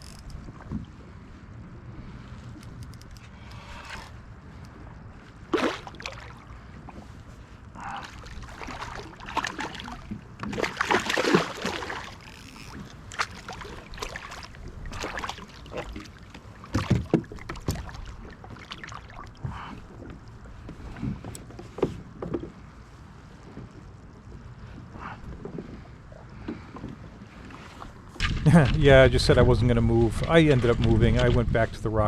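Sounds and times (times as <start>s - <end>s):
kayak paddle splashes: 5.4s - 21.2s.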